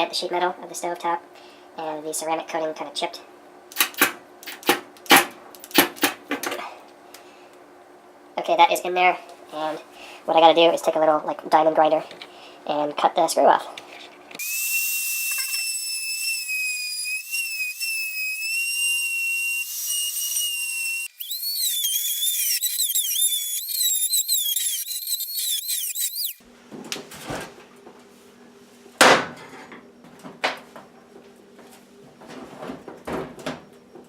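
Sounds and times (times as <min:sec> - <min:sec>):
cutting wheel cutting screw: 0:14.4 - 0:26.4
rotary tool whining: 0:14.4 - 0:26.4.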